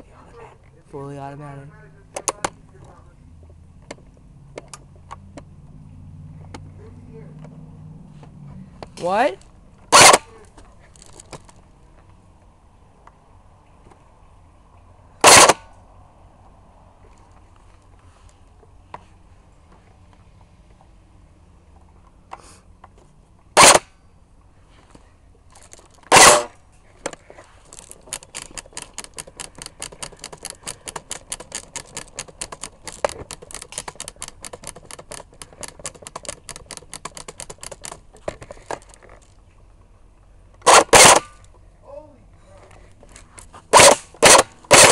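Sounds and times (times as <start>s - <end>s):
airsoft guns firing: 9.9s - 10.3s, 15.2s - 15.7s, 23.6s - 23.9s, 26.1s - 26.5s, 40.7s - 41.3s, 43.7s - 44.9s.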